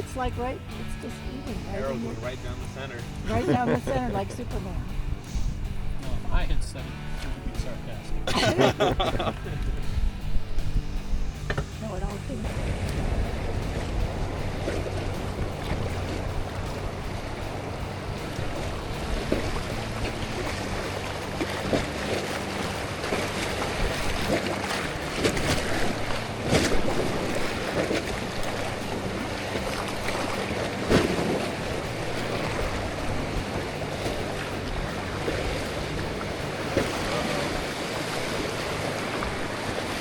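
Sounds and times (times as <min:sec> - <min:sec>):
river water rushing and splashing: 0:00.0 - 0:07.5, 0:08.2 - 0:40.0
wind buffeting microphone: 0:02.4 - 0:08.3, 0:09.2 - 0:24.4.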